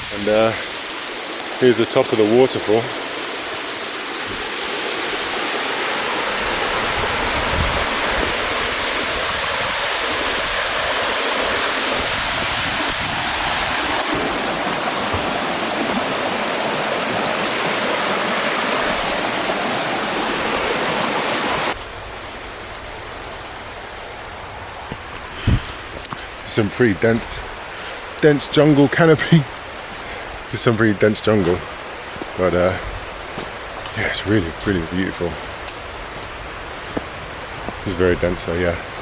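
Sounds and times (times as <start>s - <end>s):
waterfall rushing: 0.0s - 22.1s.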